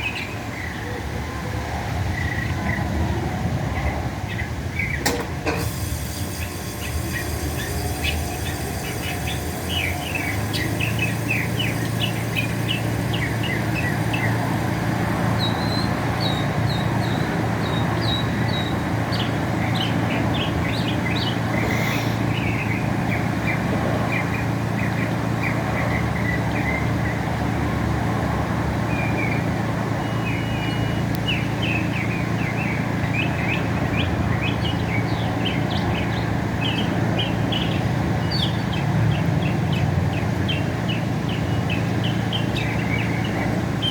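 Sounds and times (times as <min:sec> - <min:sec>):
mockingbird singing: 0:06.1 - 0:27.2.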